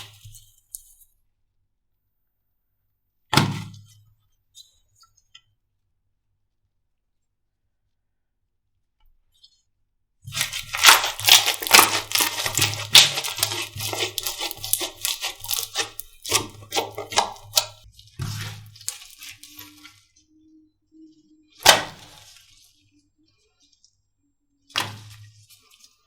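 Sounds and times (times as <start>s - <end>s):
slime crackling and popping: 10.3s - 17.8s, 18.6s - 19.6s.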